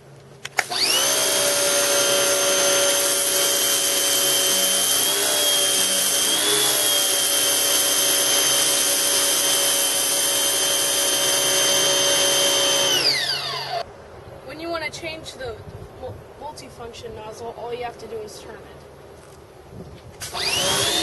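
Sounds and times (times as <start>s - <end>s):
pressure washer motor whine: 0.6s - 13.8s, 20.2s - 21.0s.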